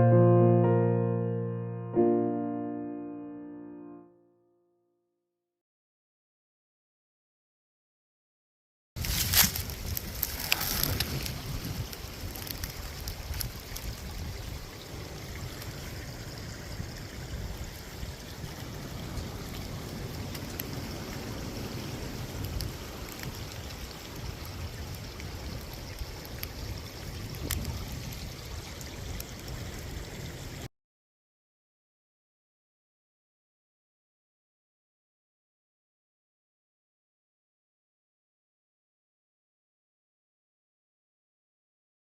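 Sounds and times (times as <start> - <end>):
stream water rushing: 9.3 - 30.6.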